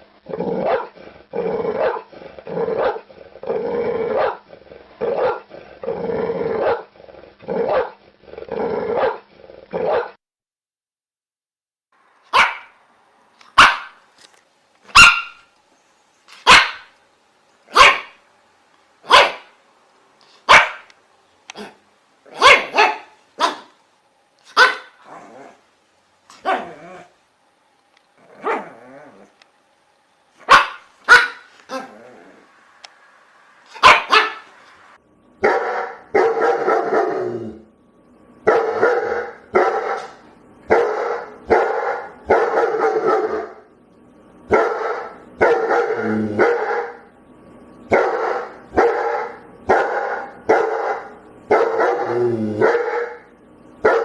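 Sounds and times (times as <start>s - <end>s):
dog barking: 0.6s - 1.0s, 1.8s - 2.1s, 2.7s - 3.0s, 4.1s - 4.4s, 5.1s - 5.5s, 6.6s - 6.9s, 7.7s - 8.0s, 9.0s - 9.2s, 9.8s - 10.2s, 12.3s - 12.8s, 13.6s - 14.0s, 14.9s - 15.5s, 16.4s - 16.9s, 17.7s - 18.2s, 19.0s - 19.6s, 20.5s - 20.9s, 21.6s - 23.8s, 24.5s - 25.0s, 26.3s - 26.8s, 28.4s - 28.8s, 30.4s - 31.9s, 33.7s - 34.5s, 35.4s - 37.1s, 38.4s - 43.6s, 44.5s - 47.1s, 47.9s - 53.2s.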